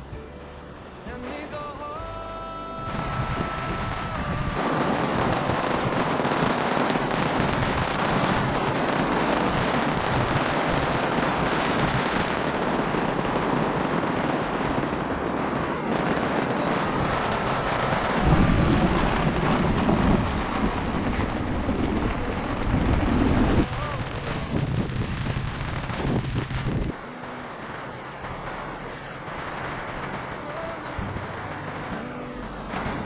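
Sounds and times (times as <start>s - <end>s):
heavy rain pattering: 0.8s - 33.0s
wind gust buffeting microphone: 2.8s - 27.0s.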